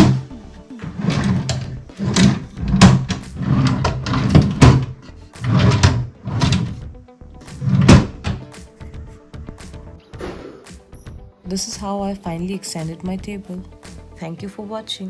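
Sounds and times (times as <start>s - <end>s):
background music: 0.0s - 15.0s
loud percussive hits: 10.2s - 10.9s.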